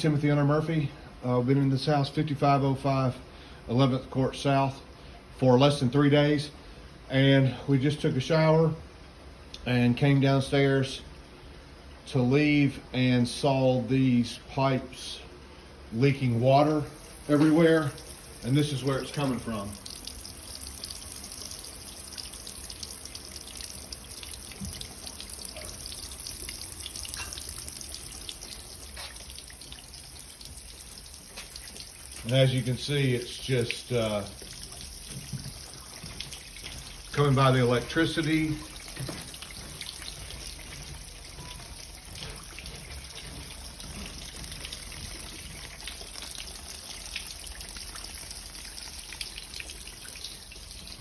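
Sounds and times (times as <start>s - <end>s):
water dripping and trickling from pipes: 15.9s - 51.0s.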